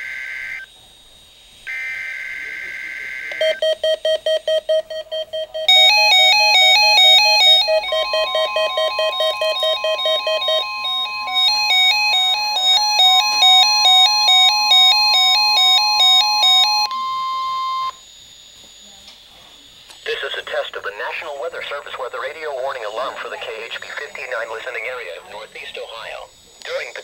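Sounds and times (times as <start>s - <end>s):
alarm beeping: 1.7s - 18.2s
steady warning alarm tone: 1.7s - 18.9s, 20.0s - 26.4s
alternating electronic beeps: 2.7s - 18.0s.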